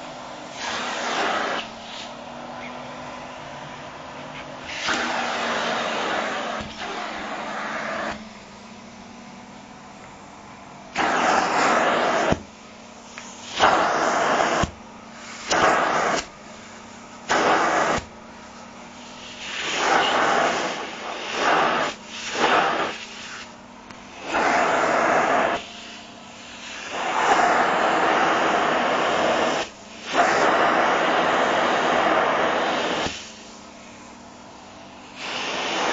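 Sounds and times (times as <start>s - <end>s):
vacuum air rushing: 0.0s - 35.9s
vacuum cleaner motor hum: 0.0s - 35.9s.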